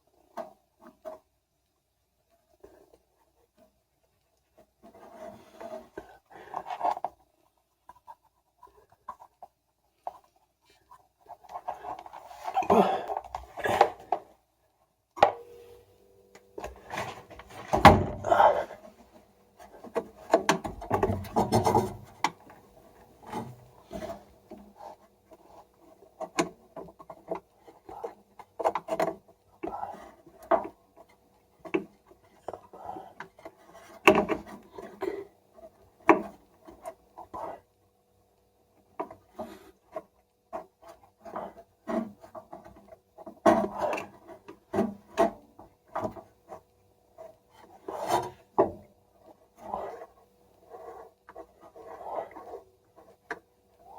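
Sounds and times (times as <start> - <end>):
faint steady hum: 0.0 - 53.9
parts rubbing and scraping: 16.6 - 25.8, 46.0 - 53.9.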